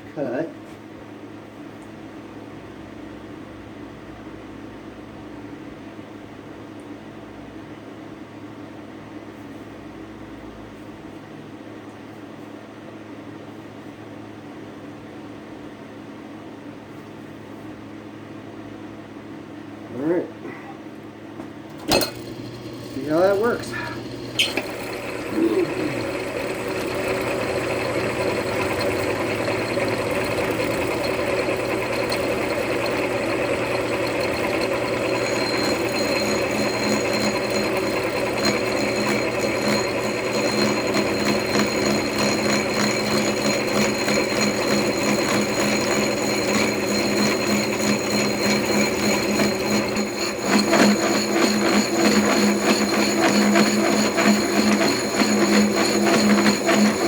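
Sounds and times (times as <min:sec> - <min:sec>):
higher machine tones: 0:21.8 - 0:57.0
milling machine cutting metal: 0:21.8 - 0:57.0.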